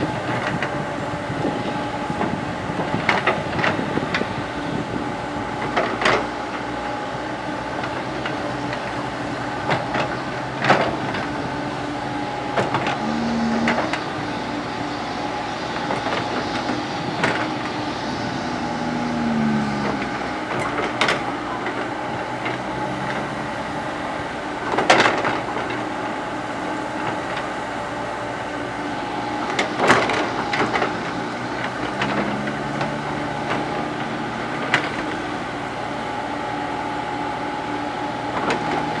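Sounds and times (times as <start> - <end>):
excavator diesel engine running: 0.0 - 39.0
hydraulic whines: 9.3 - 25.2.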